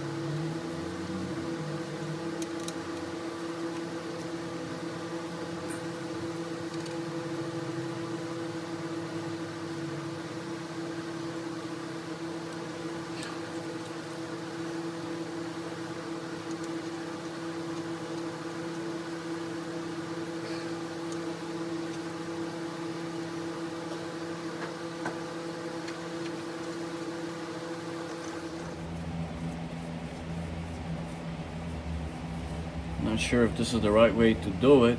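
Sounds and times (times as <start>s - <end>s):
machine hum: 0.0s - 34.9s.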